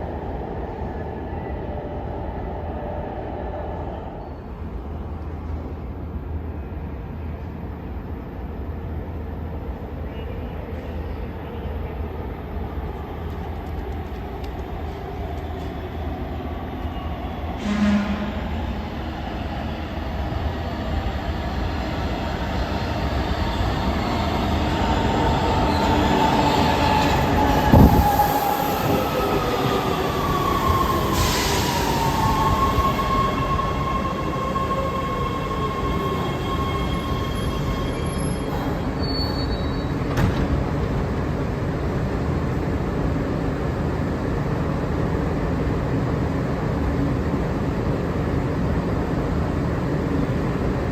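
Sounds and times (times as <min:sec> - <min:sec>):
subway train rumble: 0:00.0 - 0:50.9
wheel squeal: 0:36.0 - 0:40.0.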